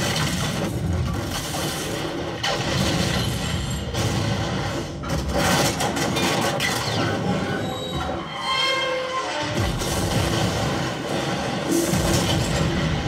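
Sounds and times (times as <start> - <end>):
film music: 7.0 - 13.0.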